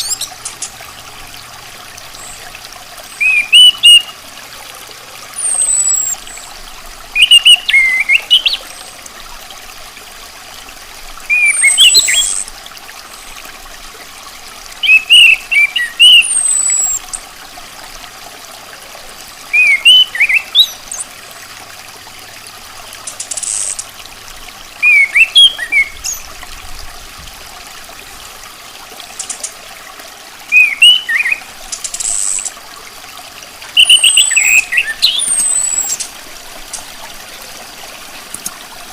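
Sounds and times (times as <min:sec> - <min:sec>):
trickling water: 0:00.0 - 0:38.9
thrush calling: 0:03.1 - 0:04.2, 0:05.4 - 0:06.5, 0:07.2 - 0:08.9, 0:14.8 - 0:17.2, 0:19.5 - 0:21.1, 0:24.8 - 0:26.3, 0:30.4 - 0:32.6, 0:33.7 - 0:36.9.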